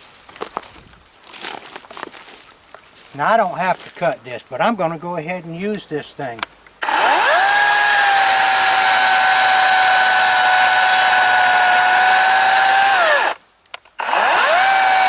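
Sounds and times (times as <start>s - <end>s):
electric chainsaw cutting a limb: 6.8s - 15.0s.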